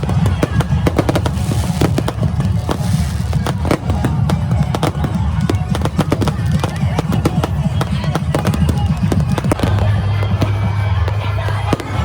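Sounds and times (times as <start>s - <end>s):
fireworks bangs and cracks: 0.0s - 12.0s
heavy low rumble: 9.2s - 12.0s.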